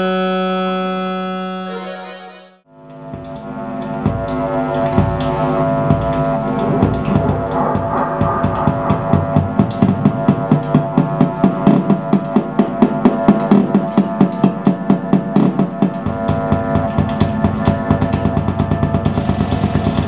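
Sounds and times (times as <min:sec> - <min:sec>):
electronic drone: 0:00.0 - 0:14.4
rapid electronic pulse: 0:00.0 - 0:20.0.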